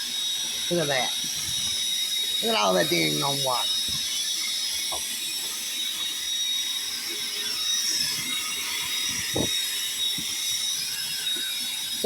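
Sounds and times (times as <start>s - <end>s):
wet dry vacuum whining: 0.0s - 12.0s
water gurgling in hose: 0.7s - 4.1s, 8.2s - 10.4s.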